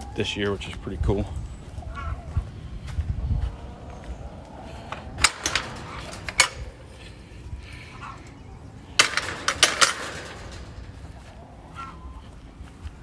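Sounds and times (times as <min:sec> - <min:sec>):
sharp clicks and knocks: 0:04.9 - 0:11.6.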